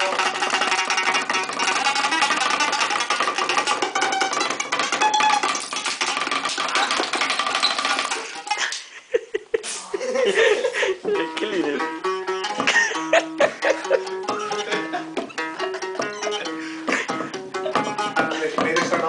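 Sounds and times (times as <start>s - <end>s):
sharp knocks: 0.0s - 8.3s
fast guitar music: 0.0s - 8.6s, 11.1s - 19.0s.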